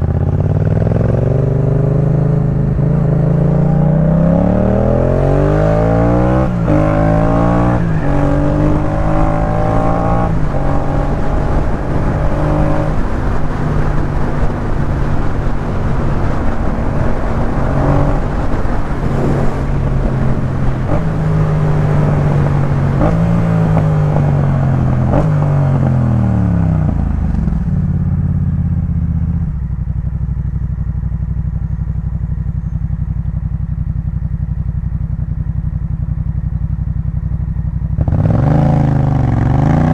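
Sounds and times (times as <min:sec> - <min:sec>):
motorcycle engine revving: 0:00.0 - 0:39.9
wind rush: 0:01.2 - 0:28.0.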